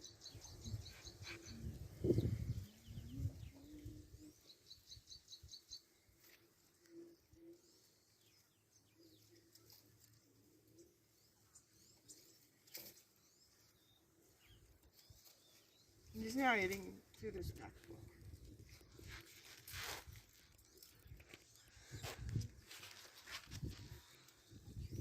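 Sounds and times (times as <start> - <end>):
soft low bird calls: 0.0 - 16.8.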